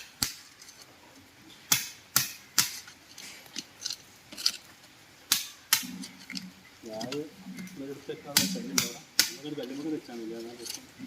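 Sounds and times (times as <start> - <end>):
hammer striking concrete: 8.3 - 9.6.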